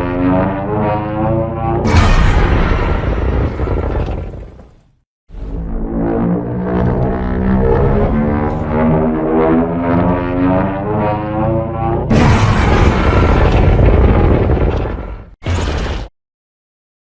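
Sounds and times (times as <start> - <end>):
deep droning monster roar: 0.0 - 4.8, 5.4 - 15.4
harsh rushing blast: 1.8 - 4.7, 12.1 - 15.7.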